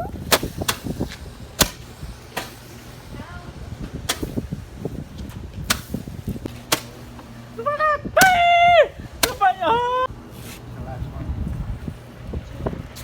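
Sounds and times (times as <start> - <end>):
firecrackers banging: 0.0 - 7.4
shrill held cry: 7.6 - 10.1.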